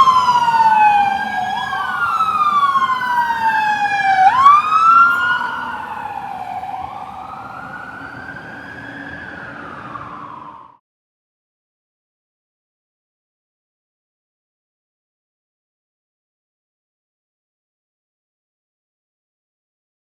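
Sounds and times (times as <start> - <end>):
truck engine rumble: 0.0 - 10.4
fire engine sirens wailing: 0.0 - 10.8.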